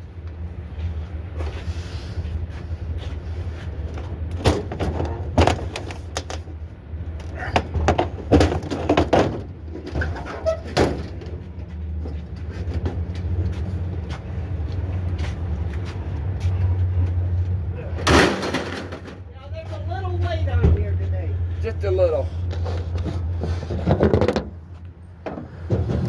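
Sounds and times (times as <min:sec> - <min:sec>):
scrap metal clanking: 0:18.0 - 0:19.2.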